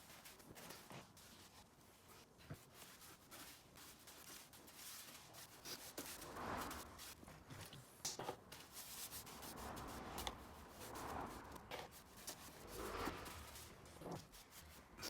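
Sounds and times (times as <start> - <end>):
rubbing strokes against a surface: 0.0 - 15.0.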